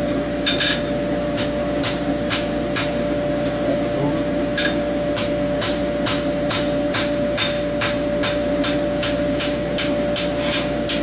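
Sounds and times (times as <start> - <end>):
steady hum: 0.0 - 11.0
hammer striking horseshoe on anvil: 0.4 - 2.9, 4.6 - 11.0.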